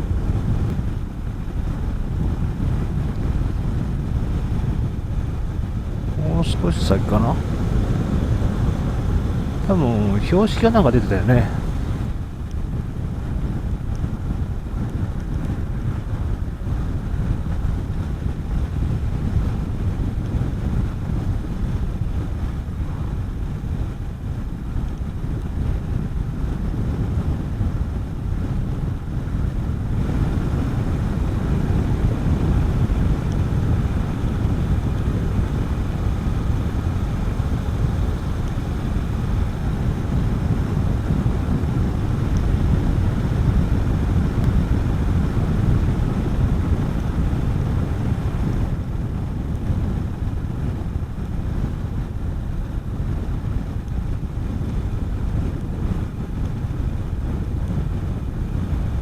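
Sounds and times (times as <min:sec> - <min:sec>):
wind rushing over microphone: 0:00.0 - 0:59.0
motorcycle engine running: 0:28.3 - 0:48.0.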